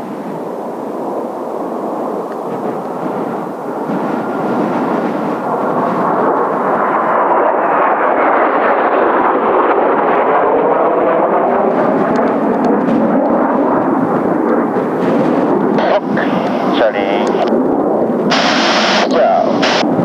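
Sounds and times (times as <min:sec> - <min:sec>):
jet engines roaring: 0:00.0 - 0:20.0.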